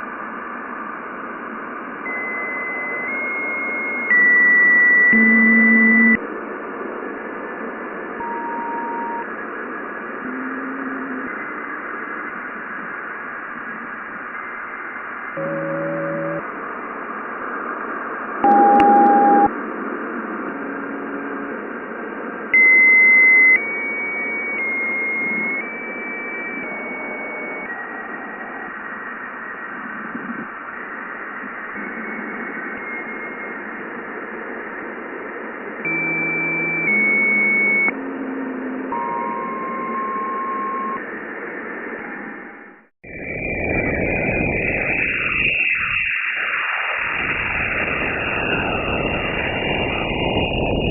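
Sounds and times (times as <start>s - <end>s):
radio-like hiss: 0.0s - 50.9s
held tones stepping in pitch: 2.1s - 6.2s, 15.4s - 16.4s, 18.4s - 19.5s, 35.8s - 41.1s.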